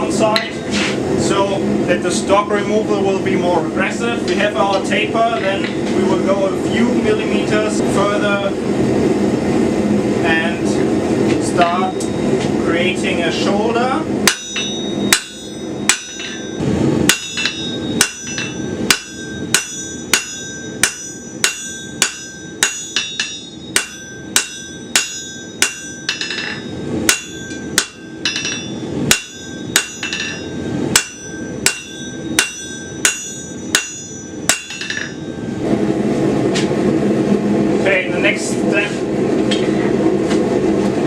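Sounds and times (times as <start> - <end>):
hammer striking steel on anvil: 14.2 - 35.4.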